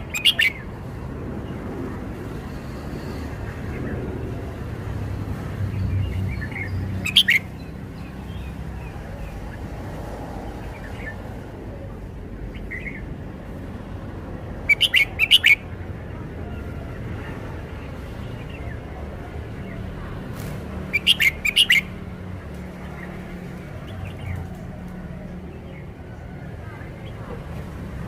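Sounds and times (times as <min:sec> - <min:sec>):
bird singing whistled phrases: 0:00.1 - 0:00.6, 0:14.7 - 0:15.6, 0:20.9 - 0:21.9.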